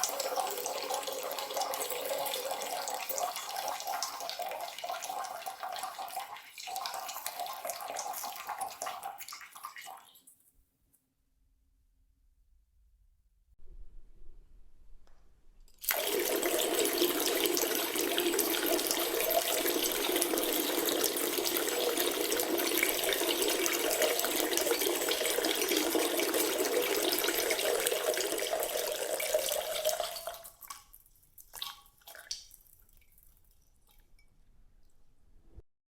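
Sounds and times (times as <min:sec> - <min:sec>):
liquid stream splashing into toilet: 0:00.0 - 0:10.2, 0:15.8 - 0:34.2
water drips: 0:00.0 - 0:10.4, 0:15.7 - 0:35.0.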